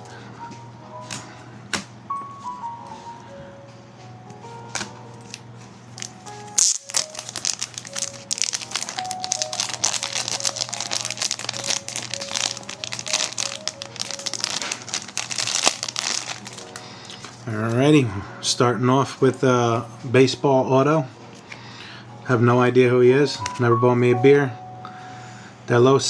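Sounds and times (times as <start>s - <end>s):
quiet background music: 0.0s - 26.0s
packaging crinkling: 4.8s - 17.8s.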